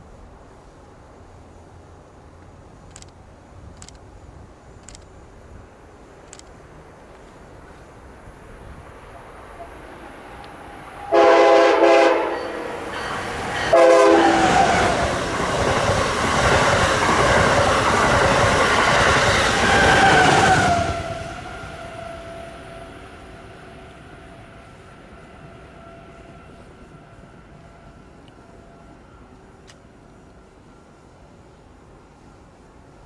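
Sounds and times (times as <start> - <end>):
train rushing past: 6.0 - 33.0
train horn blasts: 10.4 - 15.3.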